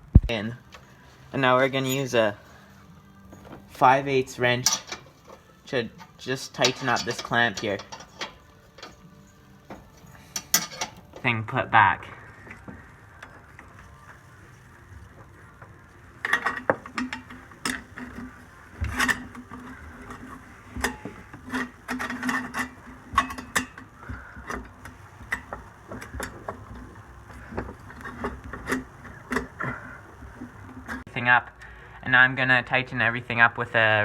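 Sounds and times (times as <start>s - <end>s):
wrench clinking on metal clamp: 10.3s - 11.0s.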